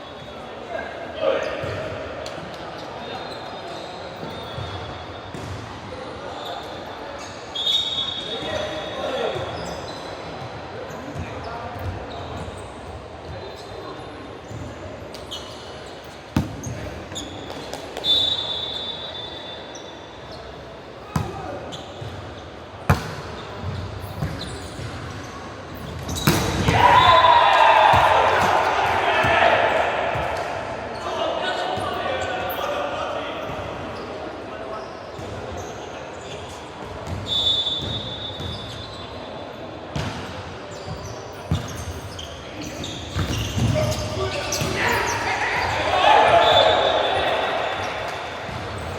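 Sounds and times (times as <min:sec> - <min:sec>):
sneaker squeaks: 0:01.4 - 0:29.4, 0:30.1 - 0:48.9
referee's whistle: 0:07.5 - 0:10.0, 0:18.0 - 0:20.0, 0:37.2 - 0:39.2, 0:41.7 - 0:48.0.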